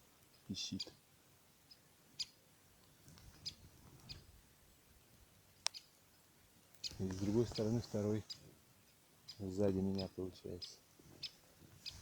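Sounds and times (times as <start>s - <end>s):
woodpecker squeaky calls: 6.8s - 12.0s.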